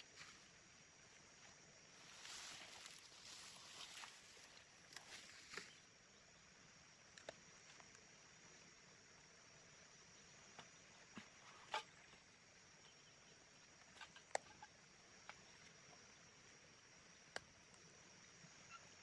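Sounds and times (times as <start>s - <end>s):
faint steady hiss: 0.0s - 19.0s.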